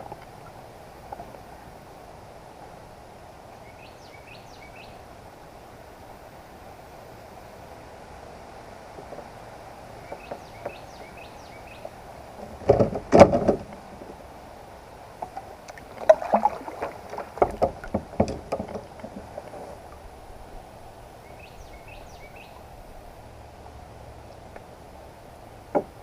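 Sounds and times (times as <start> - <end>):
knocking on a kayak: 12.6 - 13.7, 17.4 - 19.3, 25.7 - 26.0
water splashing: 15.1 - 26.0.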